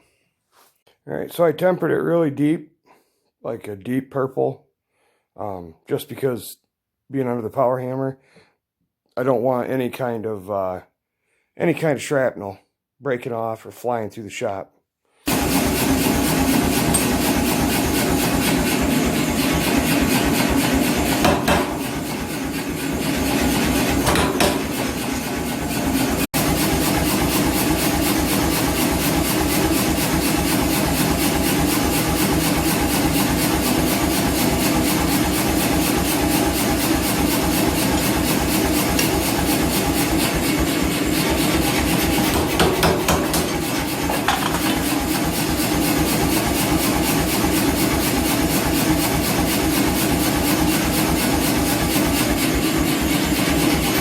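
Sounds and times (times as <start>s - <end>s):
power hammer striking: 15.3s - 45.6s
motor hum: 15.3s - 54.0s.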